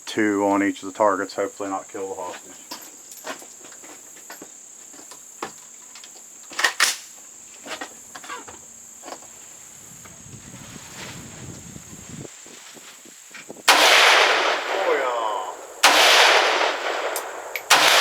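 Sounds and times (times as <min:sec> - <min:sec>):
crickets chirring: 0:00.0 - 0:18.0
sharp clacks: 0:17.0 - 0:18.0.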